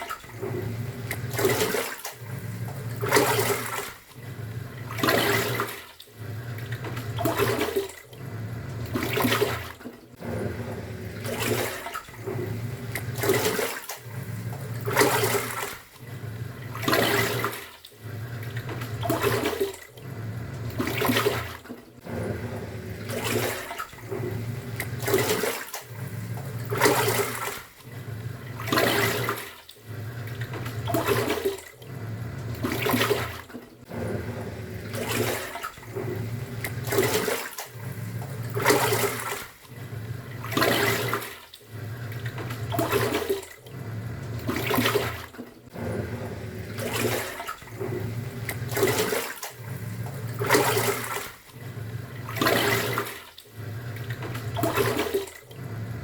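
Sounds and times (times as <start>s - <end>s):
washing machine motor humming: 0.0s - 56.0s
water churning and sloshing: 0.0s - 56.0s.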